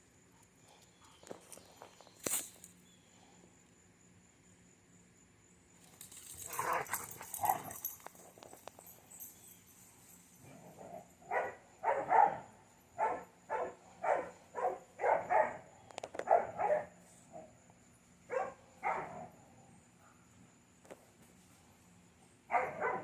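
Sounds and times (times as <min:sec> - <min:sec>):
dog barking: 0:11.3 - 0:17.0, 0:18.3 - 0:19.3, 0:22.5 - 0:23.0.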